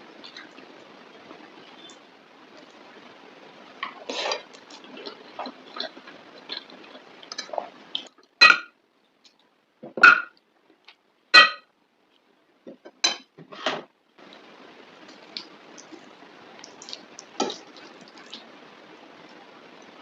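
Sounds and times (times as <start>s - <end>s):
low hiss: 0.0s - 20.0s
cutlery clinking on dishes: 11.4s - 11.6s, 13.0s - 13.8s.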